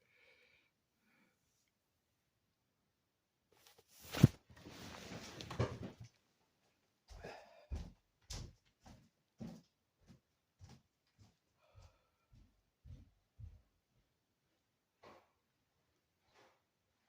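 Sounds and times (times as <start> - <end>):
rustling: 3.6 - 6.1.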